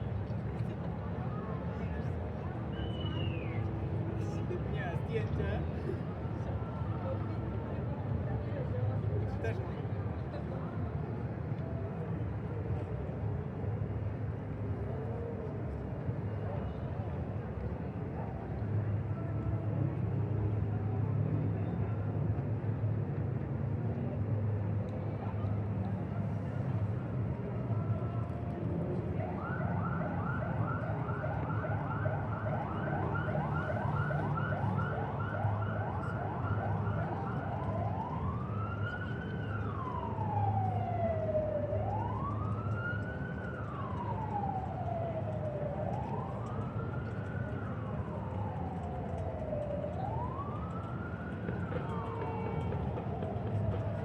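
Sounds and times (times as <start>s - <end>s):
low city rumble: 0.0s - 54.0s
emergency siren yelping and wailing: 29.0s - 54.0s.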